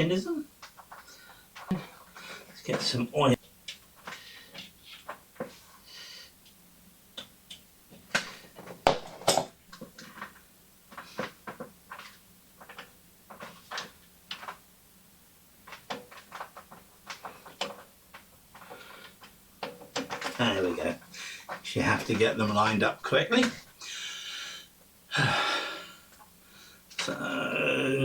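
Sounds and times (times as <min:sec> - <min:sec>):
metal parts clicking and knocking: 0:07.2 - 0:14.6, 0:15.6 - 0:20.4.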